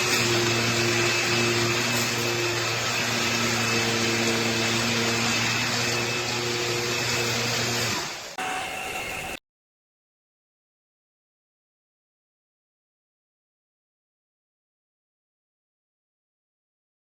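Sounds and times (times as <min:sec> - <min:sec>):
stick vacuum running: 0:00.0 - 0:09.4.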